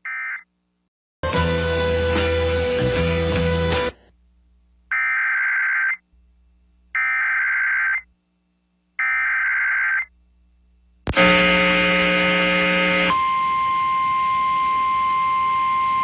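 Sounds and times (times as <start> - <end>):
buzzy digital data tones: 11.2 - 13.5.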